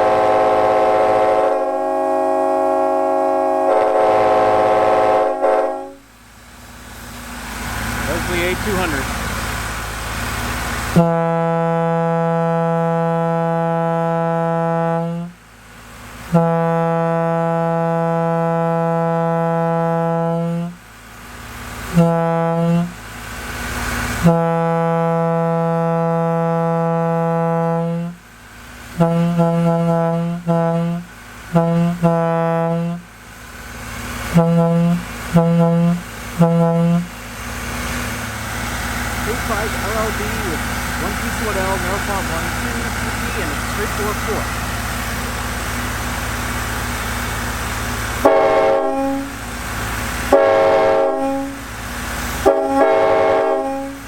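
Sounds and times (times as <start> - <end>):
locomotive air horn: 0.0 - 6.1, 10.8 - 15.5, 16.2 - 20.9, 21.8 - 23.1, 24.1 - 33.1, 34.0 - 37.9, 38.5 - 44.6, 48.1 - 54.0.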